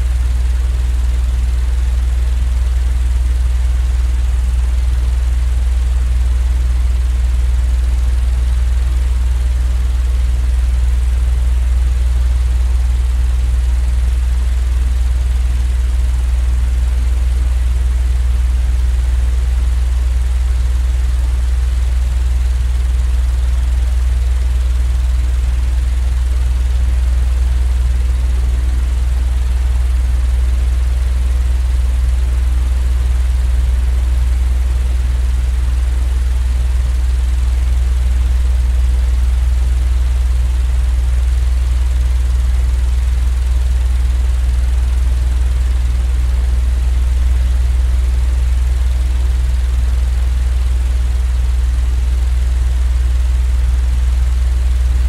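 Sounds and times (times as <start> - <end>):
white noise drone and hiss: 46.9 - 50.0.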